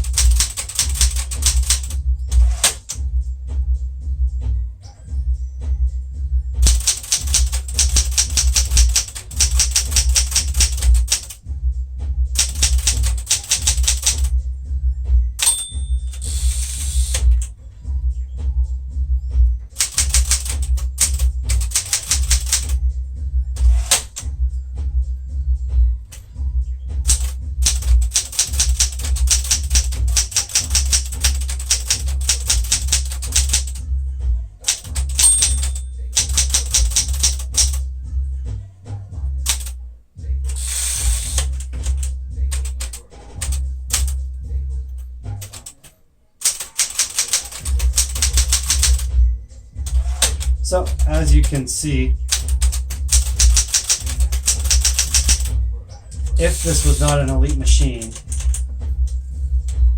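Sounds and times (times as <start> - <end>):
manual typewriter keystrokes: 0.0 - 3.0, 6.6 - 11.4, 12.4 - 14.3, 15.4 - 17.5, 19.8 - 22.8, 23.6 - 24.3, 27.1 - 33.8, 34.6 - 37.8, 39.5 - 39.8, 40.5 - 44.2, 45.3 - 49.1, 49.8 - 55.6, 56.3 - 58.6
background music with bass beat: 0.0 - 15.4, 16.0 - 34.7, 35.7 - 45.8, 47.5 - 59.9.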